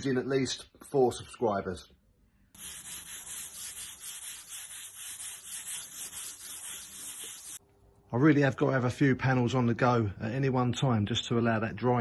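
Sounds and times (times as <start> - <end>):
sandpaper rubbing on metal panel: 2.6 - 7.6.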